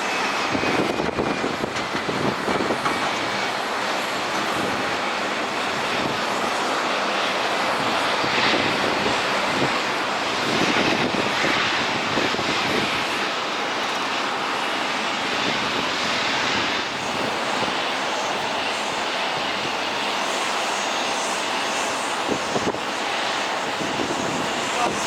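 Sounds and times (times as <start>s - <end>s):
jet engines running: 0.0s - 25.0s.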